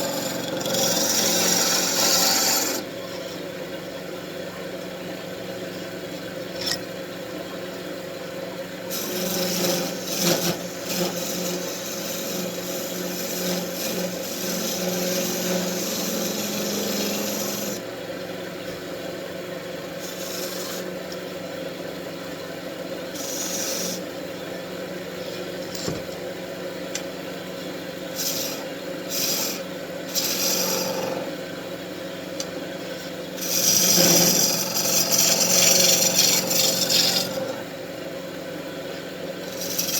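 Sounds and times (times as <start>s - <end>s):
lathe tool scraping wood: 0.0s - 2.9s, 8.9s - 17.8s, 20.0s - 21.2s, 23.1s - 24.5s, 27.6s - 31.4s, 32.8s - 37.8s, 39.4s - 39.9s
lathe motor humming: 0.0s - 3.5s, 8.3s - 18.0s, 19.2s - 25.6s, 27.4s - 39.9s.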